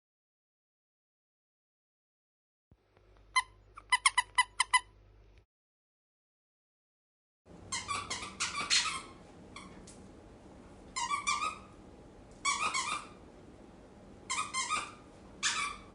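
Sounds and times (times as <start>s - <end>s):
squeaky dog toy squeaking: 3.4s - 4.9s, 7.7s - 9.8s, 11.0s - 11.7s, 12.4s - 13.2s, 14.3s - 15.9s.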